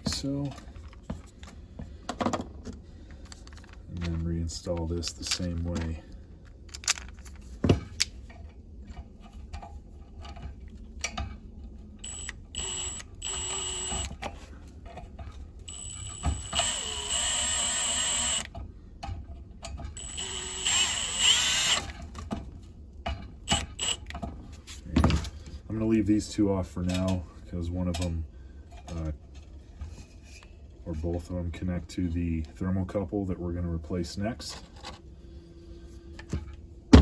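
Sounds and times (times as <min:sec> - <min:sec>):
cordless drill whining: 0:12.0 - 0:14.2, 0:15.7 - 0:18.5, 0:20.0 - 0:22.0, 0:23.5 - 0:24.1
screws and metal parts clicking: 0:12.0 - 0:14.2, 0:15.7 - 0:18.5, 0:20.0 - 0:22.0, 0:23.5 - 0:24.1.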